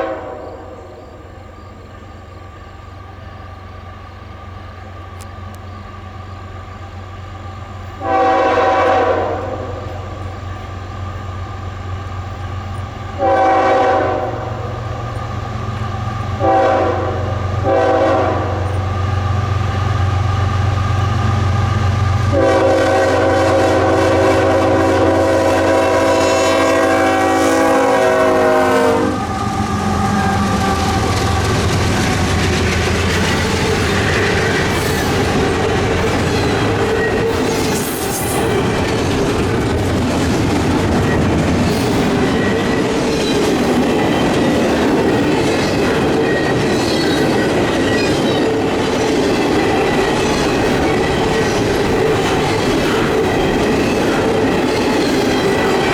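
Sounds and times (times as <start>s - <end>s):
locomotive air horn: 0.0s - 1.0s, 8.0s - 10.0s, 13.2s - 14.8s, 16.4s - 18.8s, 22.2s - 31.8s
train cars rumbling: 0.0s - 55.9s
wheels clacking over rail joints: 29.2s - 55.9s.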